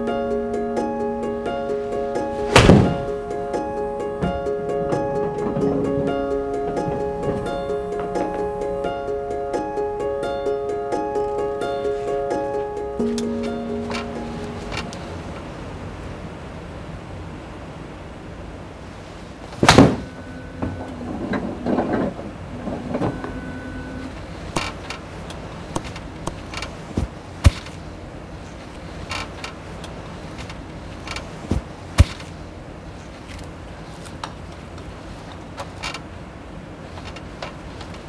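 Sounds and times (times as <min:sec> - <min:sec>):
golf club striking ball: 0:02.4 - 0:03.2.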